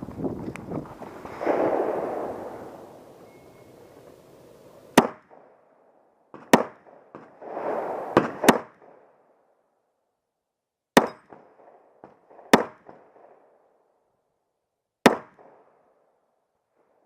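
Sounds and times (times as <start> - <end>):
wind buffeting microphone: 0.0 - 5.0
pistol shots: 1.2 - 3.7, 4.9 - 5.5, 6.3 - 9.0, 11.0 - 13.4, 15.0 - 15.7.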